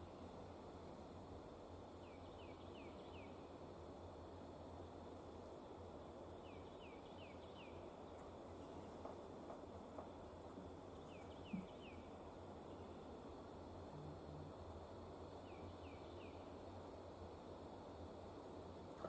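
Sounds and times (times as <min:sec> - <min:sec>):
low background hum: 0:00.0 - 0:19.0.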